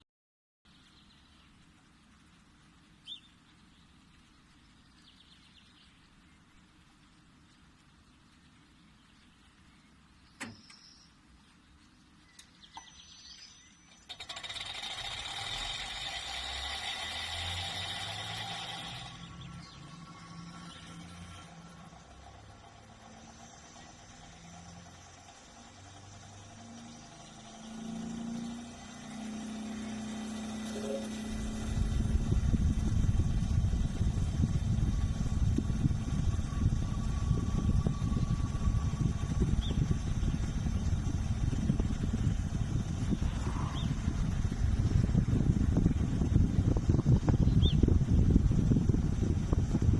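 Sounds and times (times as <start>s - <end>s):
low hum: 0.7s - 49.9s
heat pump click: 10.4s - 10.8s
harsh fast-pulsing buzz: 13.9s - 49.9s
loud rough low rumble: 15.2s - 49.9s.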